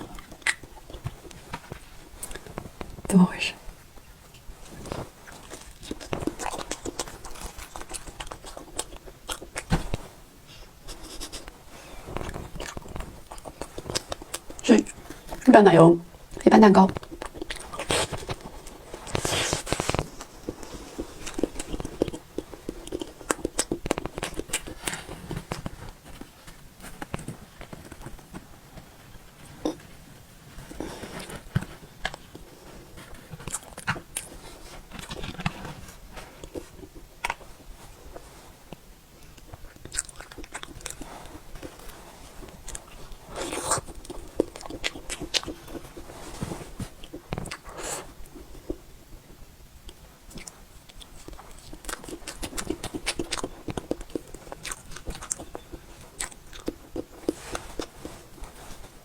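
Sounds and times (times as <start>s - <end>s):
wet mouth chewing clicks: 0.1s - 1.4s, 16.3s - 25.7s.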